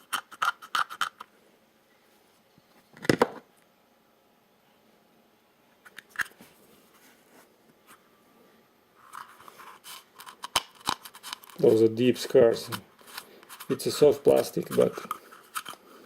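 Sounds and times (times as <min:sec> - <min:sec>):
tool scraping plastic: 0:12.6 - 0:15.8.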